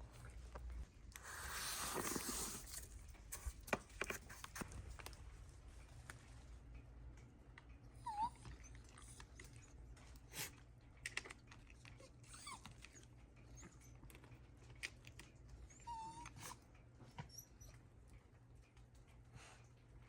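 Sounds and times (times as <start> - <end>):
dog whimpering: 8.0 - 9.5, 12.0 - 13.9, 15.7 - 16.6, 17.2 - 17.8.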